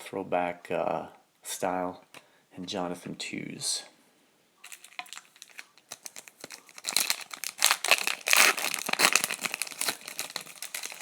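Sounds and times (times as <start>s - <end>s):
foil wrapper crinkling: 4.6s - 11.0s.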